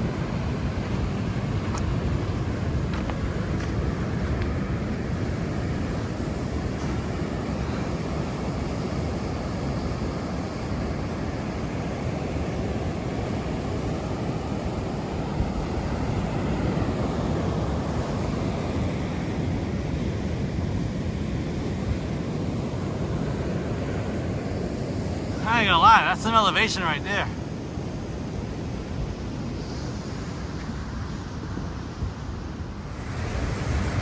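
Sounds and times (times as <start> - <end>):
surf breaking on beach: 21.2 - 27.5, 32.8 - 34.0.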